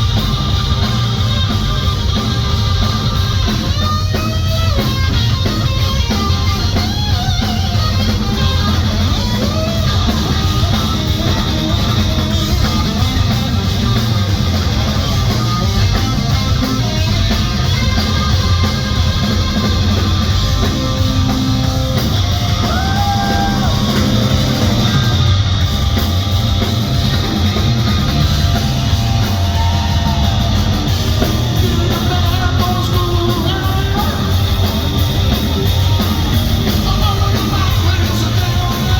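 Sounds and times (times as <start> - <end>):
live hard rock band: 0.0 - 38.9
person singing or yelling: 22.5 - 24.3, 29.0 - 34.8, 36.6 - 38.9.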